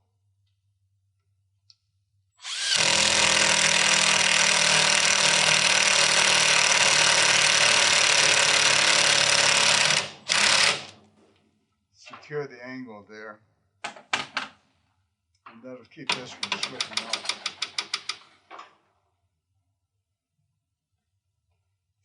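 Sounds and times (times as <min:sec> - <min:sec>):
power drill running: 0:02.4 - 0:11.0.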